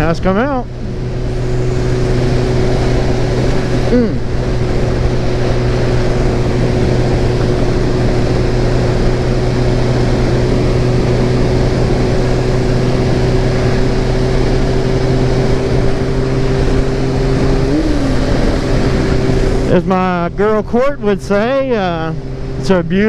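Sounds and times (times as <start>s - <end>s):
motorcycle engine cruising: 0.0s - 23.0s.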